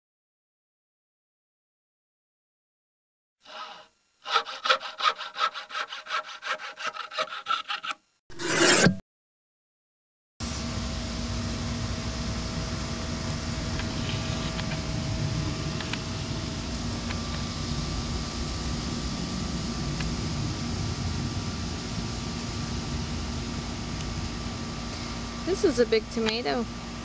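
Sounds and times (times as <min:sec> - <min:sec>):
steady mechanical hum: 0:10.4 - 0:27.0.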